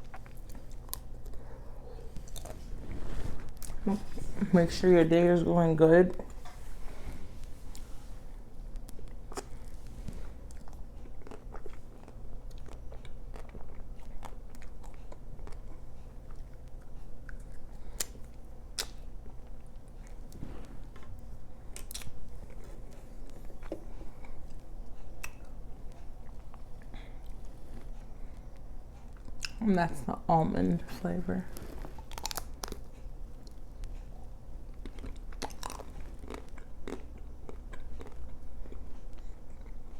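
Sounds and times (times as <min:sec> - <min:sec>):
low steady hum: 0:00.0 - 0:39.9
biting and chewing: 0:08.7 - 0:29.6, 0:31.5 - 0:34.0, 0:34.7 - 0:39.9.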